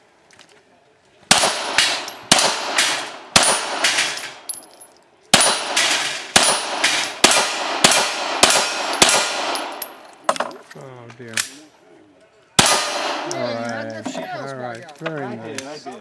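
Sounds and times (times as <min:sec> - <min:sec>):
pistol shots: 0:01.3 - 0:04.5, 0:05.3 - 0:10.0, 0:12.6 - 0:13.5.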